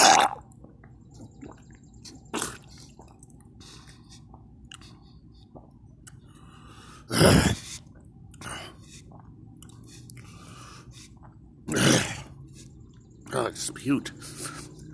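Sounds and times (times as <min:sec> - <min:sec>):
person retching: 0:00.0 - 0:00.5, 0:02.3 - 0:02.7, 0:07.1 - 0:07.6, 0:11.7 - 0:12.3
faint drips: 0:00.1 - 0:07.0, 0:07.8 - 0:14.9
person coughing: 0:07.1 - 0:07.6.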